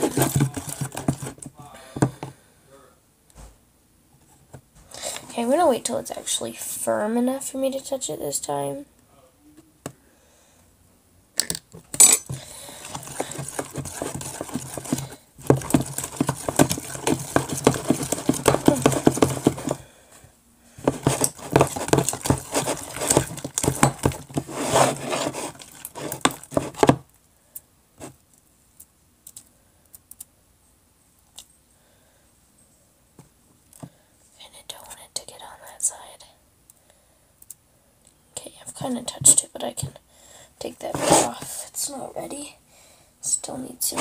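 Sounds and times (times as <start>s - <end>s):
rapid clicking and scraping: 0.0s - 1.5s, 12.3s - 19.8s, 20.8s - 27.0s
spoon stirring slime: 0.0s - 1.5s, 12.0s - 19.8s, 20.8s - 27.0s.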